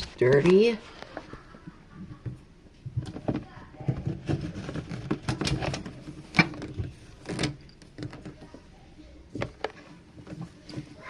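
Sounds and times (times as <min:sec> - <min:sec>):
handling knocks and clicks: 0:02.0 - 0:08.6, 0:09.3 - 0:11.0.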